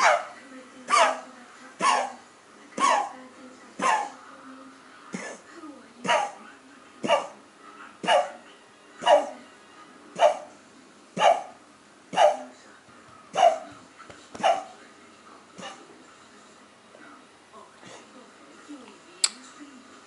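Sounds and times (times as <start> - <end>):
puppy coughing: 5.1 - 6.4, 7.0 - 7.4, 15.6 - 15.8.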